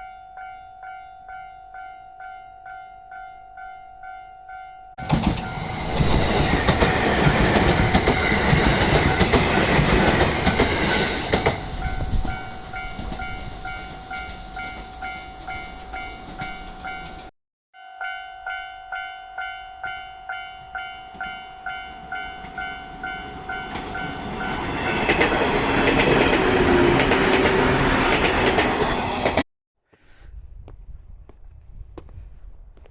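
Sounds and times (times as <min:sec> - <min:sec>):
electric train passing: 0:05.0 - 0:17.3, 0:22.0 - 0:29.4
level crossing bell ringing: 0:17.8 - 0:24.6.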